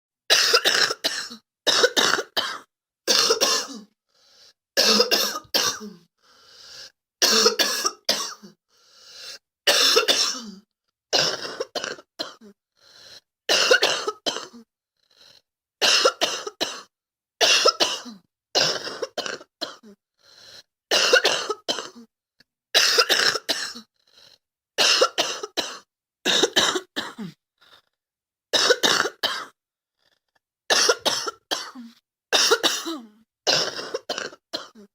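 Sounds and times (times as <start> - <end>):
girl coughing: 0.3 - 3.9, 4.8 - 6.0, 7.2 - 8.5, 9.7 - 10.6, 13.5 - 14.6, 15.8 - 19.9, 20.9 - 22.0, 22.8 - 23.9, 24.8 - 27.4, 30.7 - 34.9
quiet breaths: 4.1 - 4.6, 6.2 - 7.0.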